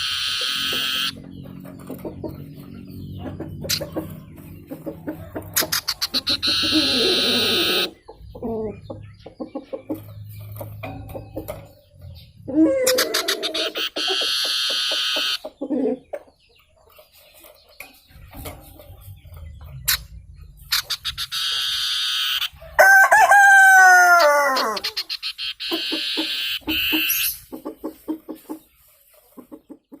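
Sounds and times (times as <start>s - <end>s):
fowl crowing: 0.0s - 1.2s, 5.2s - 8.0s, 12.5s - 15.4s, 21.3s - 27.4s
buzzing bird trills: 0.0s - 1.4s, 5.6s - 8.0s, 12.8s - 15.5s, 20.7s - 22.6s, 24.2s - 27.5s
bird clucking: 0.0s - 30.0s.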